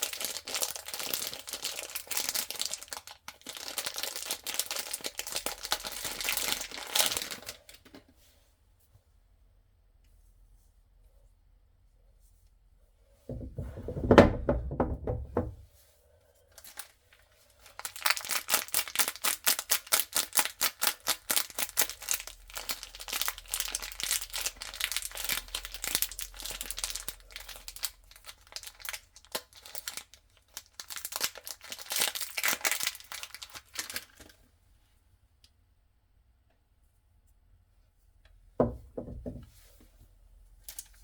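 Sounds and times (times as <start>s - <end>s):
wrapper tearing and crinkling: 0.0s - 7.8s, 16.6s - 16.9s, 17.6s - 34.4s.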